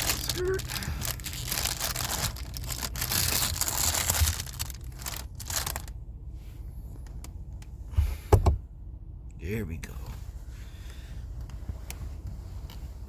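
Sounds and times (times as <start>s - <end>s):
close rustling and crinkling: 0.0s - 6.6s
low rumble: 0.0s - 9.4s.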